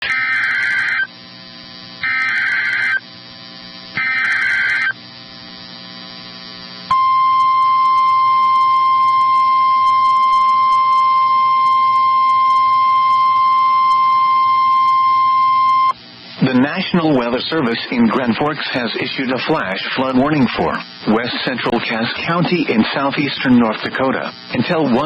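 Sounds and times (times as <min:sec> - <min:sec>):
harsh digital data screech: 0:00.0 - 0:01.1, 0:02.0 - 0:03.0, 0:04.0 - 0:05.0, 0:18.0 - 0:25.0
single-pitch warning alarm tone: 0:00.0 - 0:01.1, 0:02.0 - 0:03.1, 0:04.0 - 0:05.0, 0:06.9 - 0:16.0.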